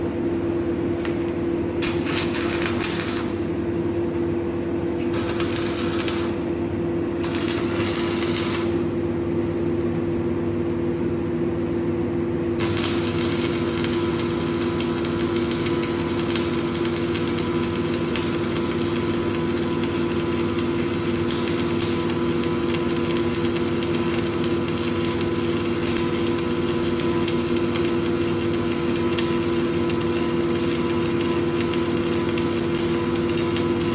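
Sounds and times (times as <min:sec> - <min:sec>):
crackling hiss of welding arc: 0:01.8 - 0:03.4, 0:05.2 - 0:06.5, 0:07.2 - 0:08.8, 0:12.6 - 0:33.9
welding machine hum: 0:01.8 - 0:03.7, 0:05.1 - 0:09.9, 0:12.6 - 0:33.9.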